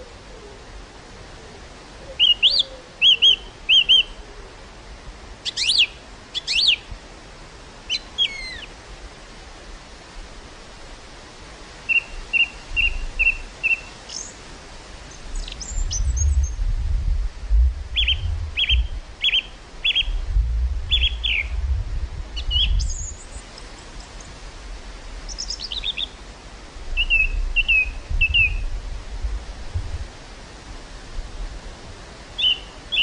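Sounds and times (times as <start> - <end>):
breeze hiss: 0.0 - 33.0
songbirds chirping: 1.4 - 6.9, 7.8 - 8.8, 11.8 - 16.7, 17.9 - 20.2, 20.8 - 21.6, 22.2 - 28.7, 32.3 - 33.0
wind rumble on microphone: 14.4 - 32.4.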